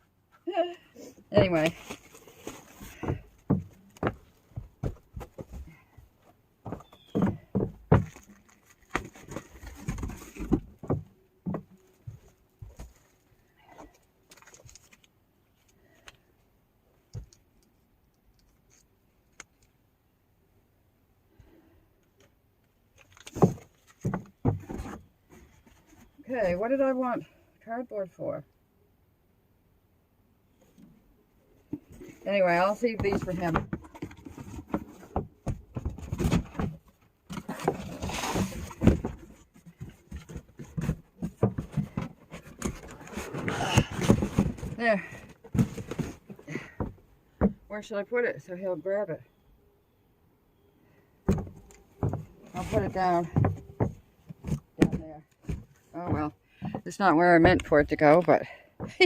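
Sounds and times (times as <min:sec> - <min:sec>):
cardboard packaging being handled: 0:01.4 - 0:05.8, 0:06.7 - 0:11.1, 0:23.0 - 0:26.2, 0:32.9 - 0:47.0.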